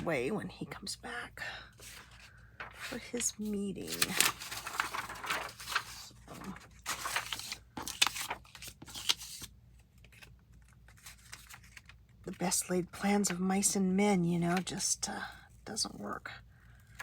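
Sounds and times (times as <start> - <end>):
paper crinkling and tearing: 1.8 - 12.0.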